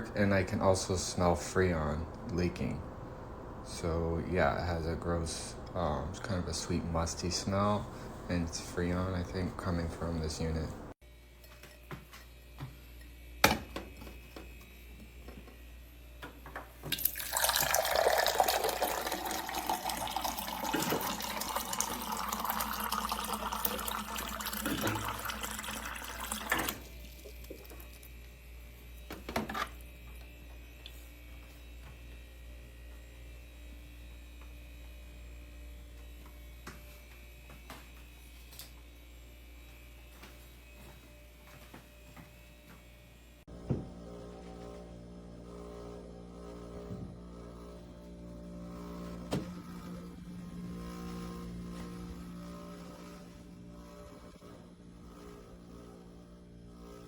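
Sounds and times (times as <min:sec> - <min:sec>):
water pouring into container: 0:16.9 - 0:28.1.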